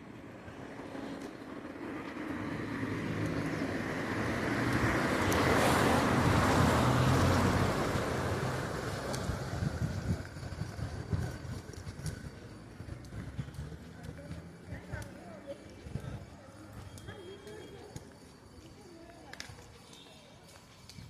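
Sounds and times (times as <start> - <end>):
vehicle driving past: 2.3 - 10.8.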